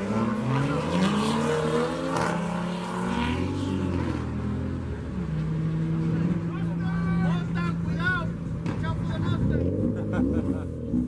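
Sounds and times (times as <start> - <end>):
car engine revving: 0.0 - 11.0.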